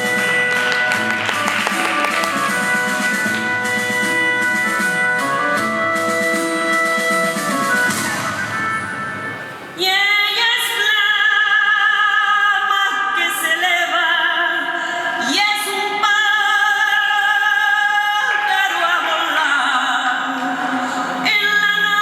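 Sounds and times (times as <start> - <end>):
instrumental music: 0.0 - 9.4
woman singing with vibrato: 9.8 - 22.0.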